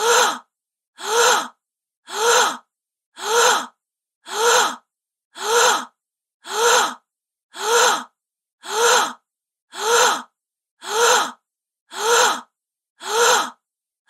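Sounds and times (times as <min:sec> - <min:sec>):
woman gasping: 0:00.0 - 0:00.4.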